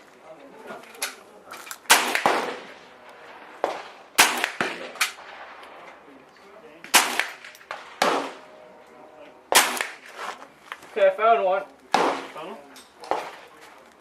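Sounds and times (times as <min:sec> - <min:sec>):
loud gunshots ringing out: 0:01.9 - 0:05.8, 0:06.8 - 0:08.6, 0:09.5 - 0:10.2, 0:11.9 - 0:13.4
faint distant gunshots: 0:01.9 - 0:06.0, 0:06.8 - 0:08.7, 0:09.5 - 0:10.3, 0:11.9 - 0:13.5.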